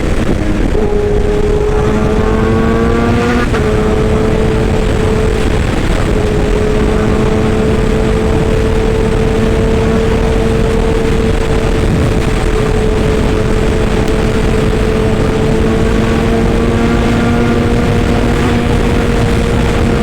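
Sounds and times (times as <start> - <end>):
constant whine: 0.0 - 20.0
excavator engine running: 0.0 - 20.0.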